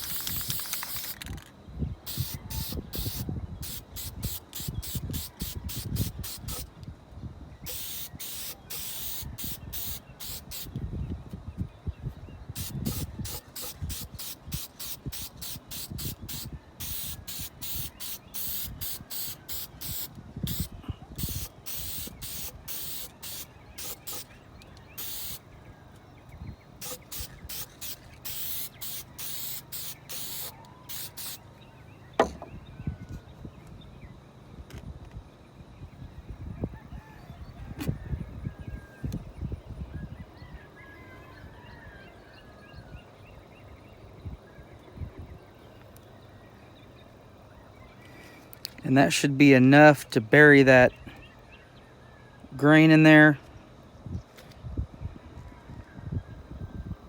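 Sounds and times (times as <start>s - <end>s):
aerosol can spraying: 0.0s - 1.3s, 2.1s - 6.7s, 7.7s - 10.7s, 12.6s - 25.4s, 26.8s - 31.4s.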